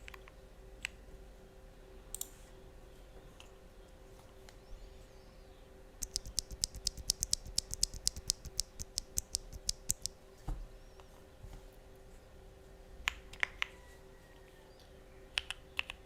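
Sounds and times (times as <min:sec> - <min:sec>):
mechanical keyboard typing: 0:06.0 - 0:10.2.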